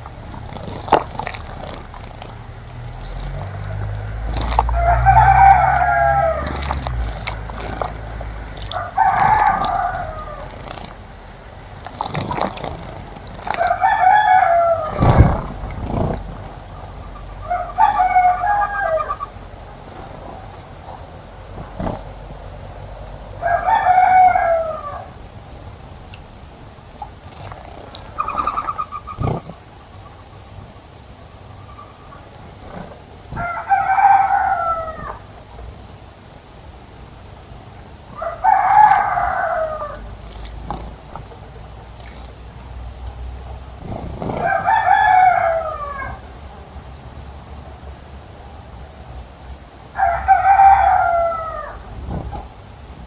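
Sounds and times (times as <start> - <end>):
rooster crowing: 3.2 - 10.9, 13.4 - 16.0, 16.9 - 19.4, 23.2 - 25.2, 33.3 - 35.3, 38.2 - 40.1, 44.2 - 46.3, 49.9 - 52.1.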